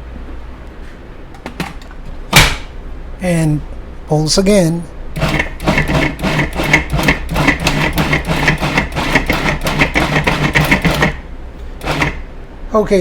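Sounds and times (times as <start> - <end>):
food processor running: 5.2 - 11.2, 11.8 - 12.3.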